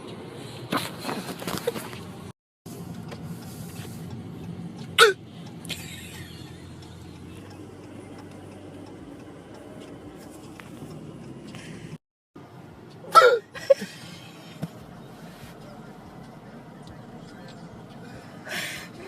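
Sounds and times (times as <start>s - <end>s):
man hiccuping: 5.0s - 5.2s, 13.1s - 13.6s.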